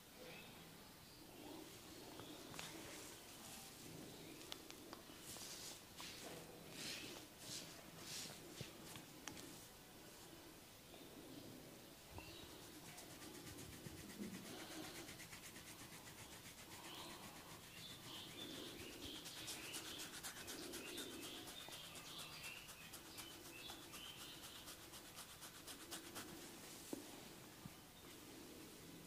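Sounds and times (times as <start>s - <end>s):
fingers scratching through hair: 12.5s - 26.5s.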